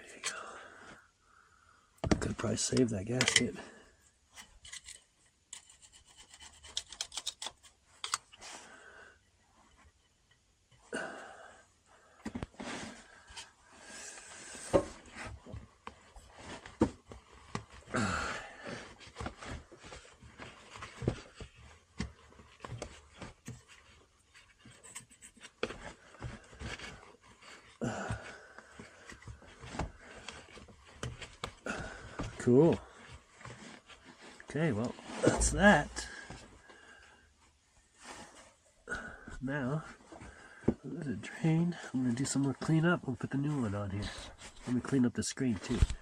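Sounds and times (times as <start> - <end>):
hand tools on metal: 2.2 - 3.6
person breathing hard: 17.9 - 19.2.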